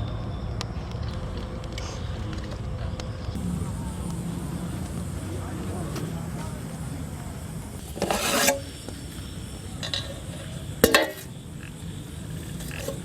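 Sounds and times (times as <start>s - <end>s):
metal utensil scraping pot: 7.8s - 9.0s, 9.8s - 11.4s, 12.4s - 13.0s
metal clank: 9.8s - 11.4s.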